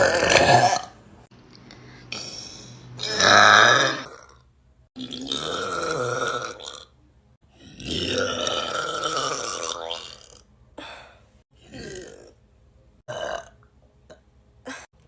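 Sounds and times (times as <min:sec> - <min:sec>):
person burping: 0:00.0 - 0:01.0, 0:03.0 - 0:10.5, 0:11.6 - 0:12.4, 0:13.1 - 0:14.9.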